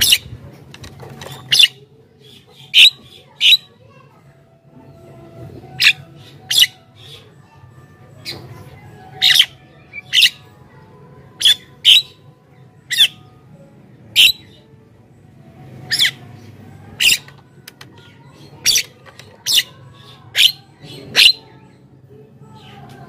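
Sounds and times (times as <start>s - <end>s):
myna squawking calls: 9.2s - 10.4s.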